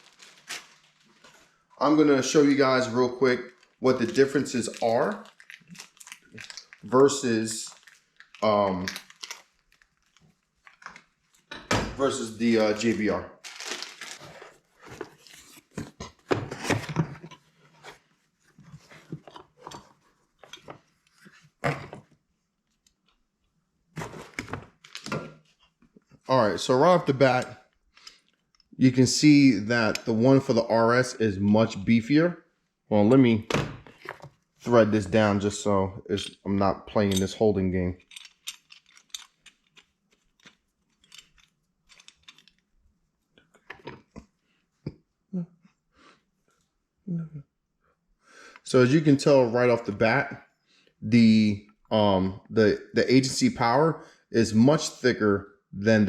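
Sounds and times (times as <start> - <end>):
small hard parts clicking and knocking: 38.0 - 42.7.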